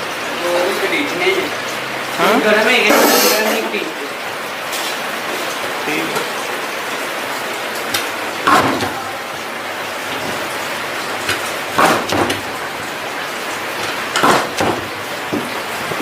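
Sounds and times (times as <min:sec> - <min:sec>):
factory machinery hiss: 0:02.9 - 0:03.6
machinery clatter bursts: 0:09.8 - 0:16.0.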